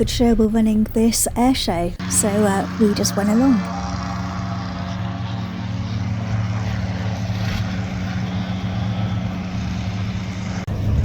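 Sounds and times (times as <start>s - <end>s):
propeller aircraft engine running: 0.0s - 11.0s.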